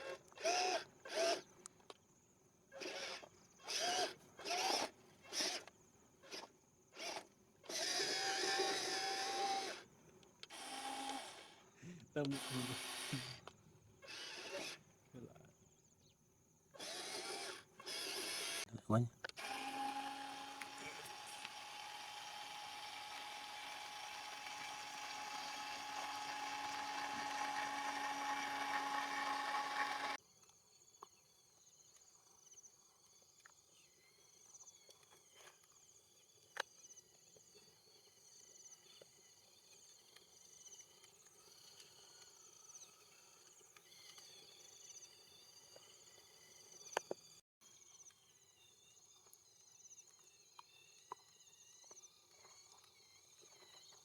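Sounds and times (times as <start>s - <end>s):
small electric motor whining: 0.0s - 1.5s, 2.8s - 14.9s, 16.8s - 18.7s, 19.3s - 30.2s.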